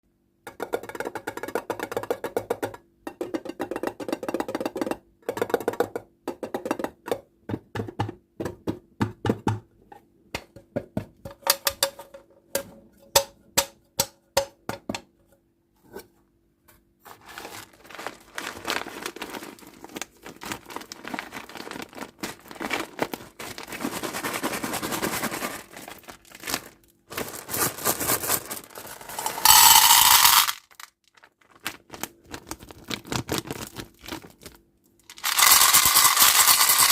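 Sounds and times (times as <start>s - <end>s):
packaging crinkling and rustling: 17.0s - 29.4s, 30.5s - 36.0s.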